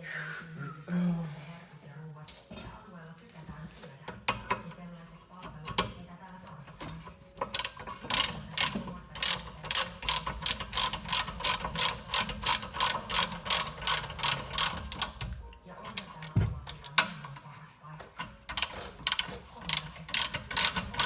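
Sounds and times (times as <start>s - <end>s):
ratchet wrench clicking: 6.6s - 17.4s, 18.1s - 21.0s.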